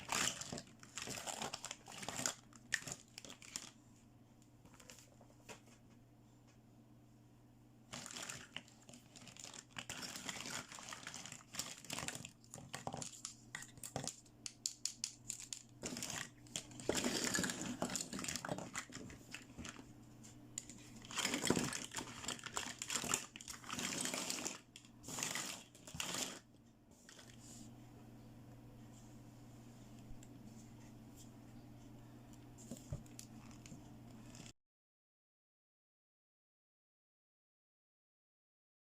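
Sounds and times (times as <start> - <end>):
packaging crinkling: 0.0 - 3.8, 7.9 - 19.9, 20.6 - 26.5.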